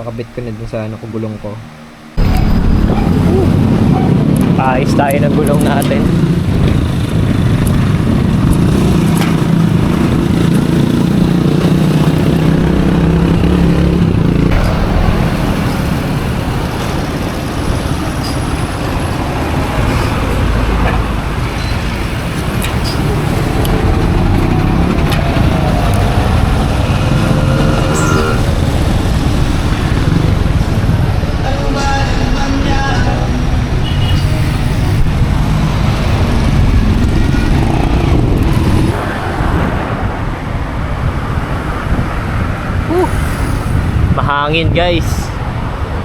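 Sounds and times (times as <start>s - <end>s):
road traffic rumble: 0.0s - 46.0s
wind buffeting microphone: 2.2s - 32.0s, 34.5s - 46.0s.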